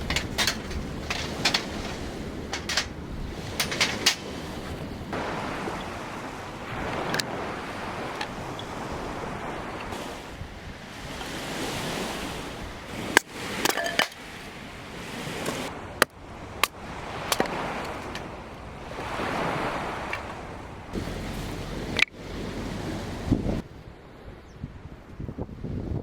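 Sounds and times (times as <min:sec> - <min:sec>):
sharp clicks and clinks: 0:00.0 - 0:03.0, 0:03.6 - 0:04.3, 0:13.6 - 0:14.2.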